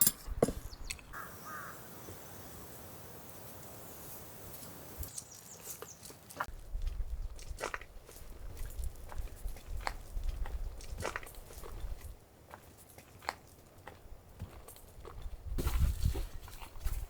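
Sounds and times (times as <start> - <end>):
bird chirp: 0.6 - 2.5, 5.0 - 6.1.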